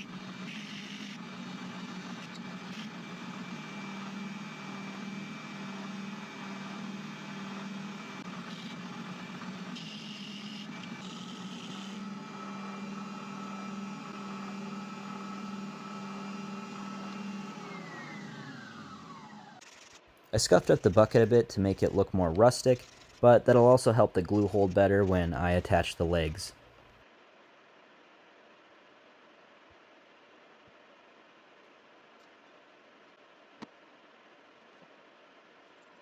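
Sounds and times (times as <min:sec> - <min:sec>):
power tool motor hum: 0:00.0 - 0:20.8
motor spinning down: 0:00.0 - 0:23.2.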